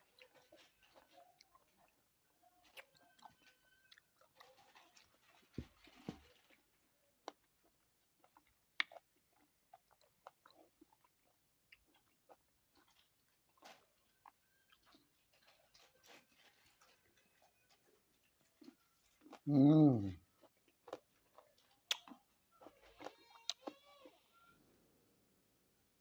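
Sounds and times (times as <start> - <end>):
chewing and biting fruit: 7.2 - 24.1
wet mouth clicks: 21.9 - 22.2.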